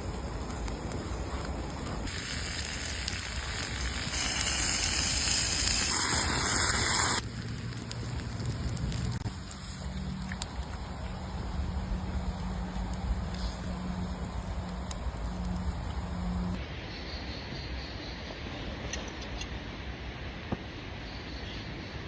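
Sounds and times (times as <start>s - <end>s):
campfire crackling: 0.0s - 16.6s
food sizzling in a pan: 2.0s - 9.9s.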